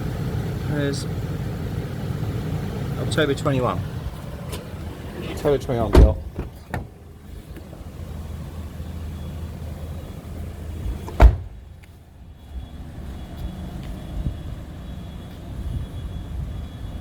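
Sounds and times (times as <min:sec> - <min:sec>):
low outdoor rumble: 0:00.0 - 0:17.0
car door shutting with thud: 0:04.2 - 0:07.0, 0:10.8 - 0:11.6.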